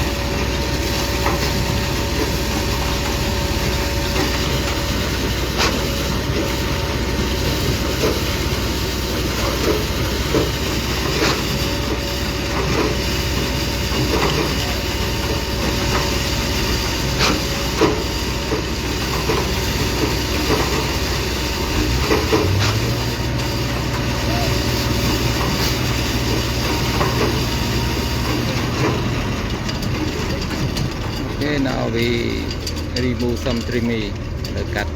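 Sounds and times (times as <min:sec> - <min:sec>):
diesel machinery running: 0:00.0 - 0:34.9
metallic knocks and clanks: 0:28.2 - 0:34.9.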